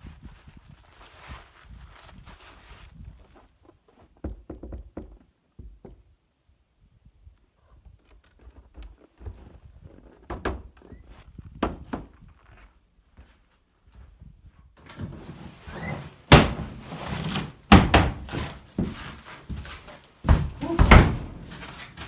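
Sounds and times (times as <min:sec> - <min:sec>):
knocks and thuds: 0:14.9 - 0:22.0.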